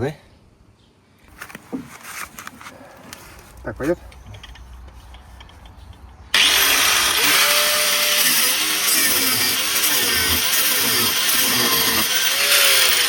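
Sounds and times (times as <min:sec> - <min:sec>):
power tool cutting metal: 0:06.4 - 0:13.0.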